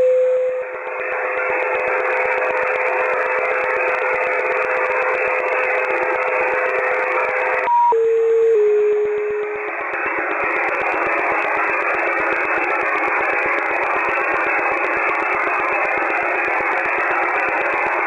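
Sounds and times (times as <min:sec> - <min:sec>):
carrier whistle: 0:00.0 - 0:00.8
rapid static clicks: 0:00.7 - 0:07.7, 0:09.5 - 0:18.0
radio beep and descending tones: 0:07.7 - 0:09.7
radio hiss: 0:08.6 - 0:18.0.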